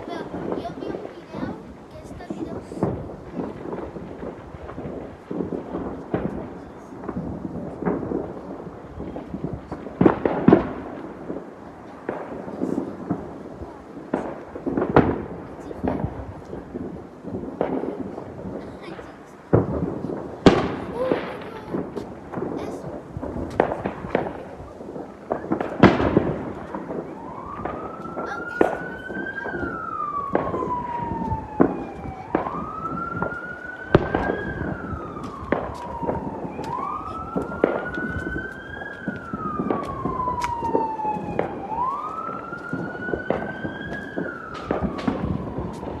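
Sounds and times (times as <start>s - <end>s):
ambulance siren wailing: 24.1s - 46.0s.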